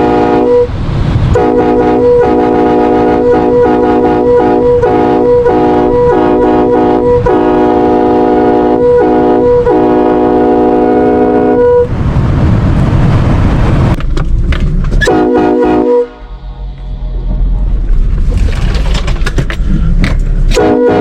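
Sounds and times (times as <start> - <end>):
train horn chord: 0.0 - 0.7, 1.3 - 11.9, 15.0 - 16.7, 20.5 - 21.0
vehicle and road rumble: 0.0 - 21.0.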